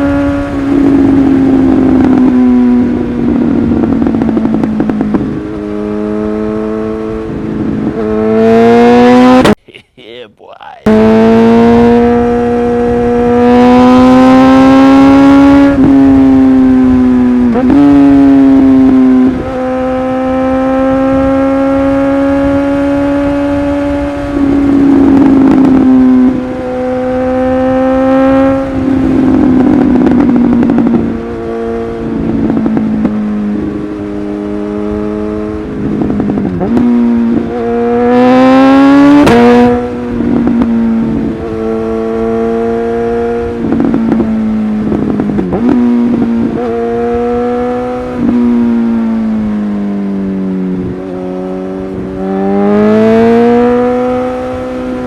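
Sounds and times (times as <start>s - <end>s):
motorcycle engine revving hard: 0.0s - 9.6s, 10.9s - 55.0s
exhaust crackles and pops: 34.9s - 37.7s, 43.5s - 47.3s.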